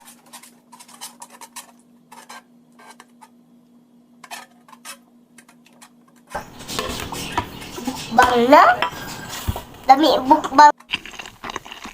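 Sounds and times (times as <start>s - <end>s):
faint steady hum: 0.0s - 11.9s
tableware clicking: 6.4s - 9.8s.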